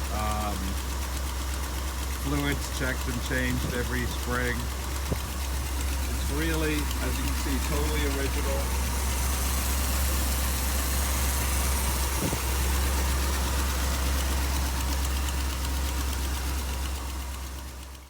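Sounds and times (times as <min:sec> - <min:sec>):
car engine idling: 0:00.0 - 0:18.0.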